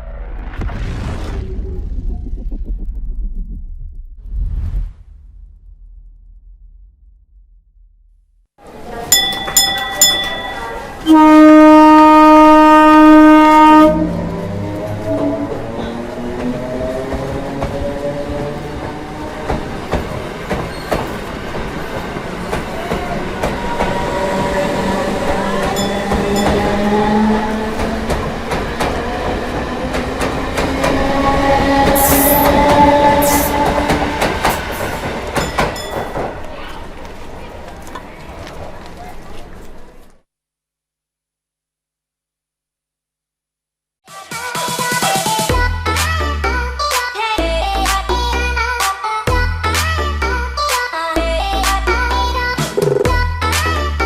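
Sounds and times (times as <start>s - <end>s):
low train rumble: 8.6s - 40.2s
ringing clangs: 9.1s - 11.0s, 25.7s - 26.9s, 35.3s - 36.5s
wheels clicking over rail joints: 9.1s - 11.1s, 18.6s - 40.2s
steam locomotive whistle: 11.0s - 14.4s, 30.9s - 34.9s.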